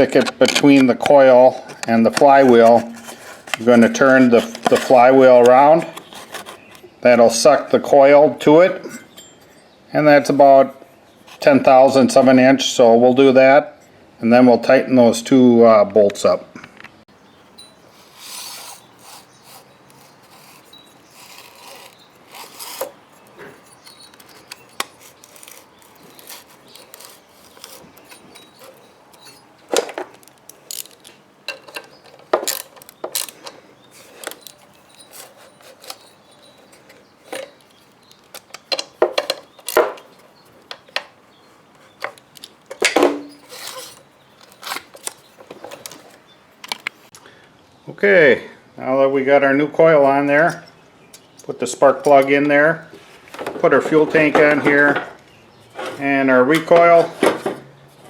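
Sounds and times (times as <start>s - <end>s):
hand tools clicking on metal: 0.0s - 6.8s, 17.6s - 41.2s, 41.8s - 47.0s
tool scraping: 0.0s - 6.9s, 17.6s - 46.2s.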